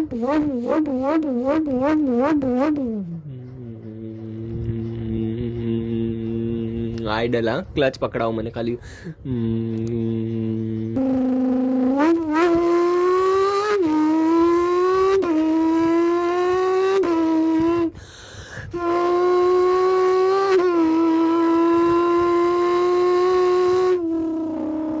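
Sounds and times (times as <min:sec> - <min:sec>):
man imitating a car engine: 0:00.0 - 0:07.5, 0:09.1 - 0:18.0, 0:18.6 - 0:25.0
man breathing: 0:08.8 - 0:09.8, 0:17.9 - 0:18.8.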